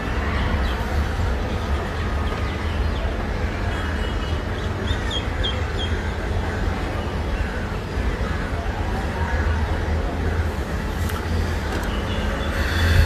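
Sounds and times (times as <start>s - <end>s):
wind buffeting microphone: 12.6s - 13.0s.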